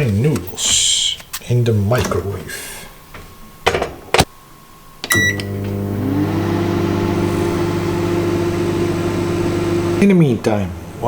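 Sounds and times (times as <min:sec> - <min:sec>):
knocks: 0:03.1 - 0:04.3
microwave oven humming: 0:04.4 - 0:11.0
microwave beep: 0:05.0 - 0:07.1
microwave click: 0:05.0 - 0:07.1.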